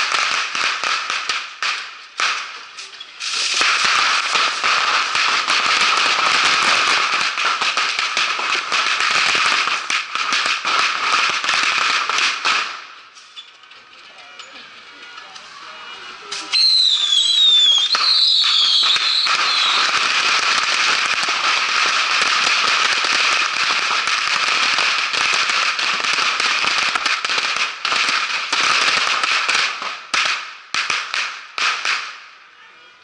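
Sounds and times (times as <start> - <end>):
fireworks crackling and bursting: 0.0 - 14.0, 14.6 - 32.6
whistling rockets: 15.7 - 32.2.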